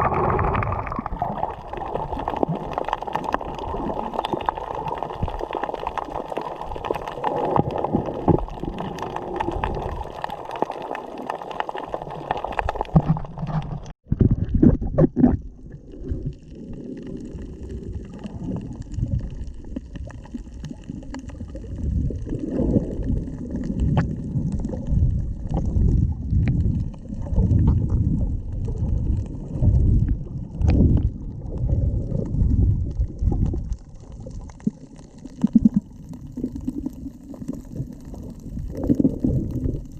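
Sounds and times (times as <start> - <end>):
seawater gurgling and sloshing: 0.0 - 39.9
muffled low gurgling rumble: 13.4 - 39.9.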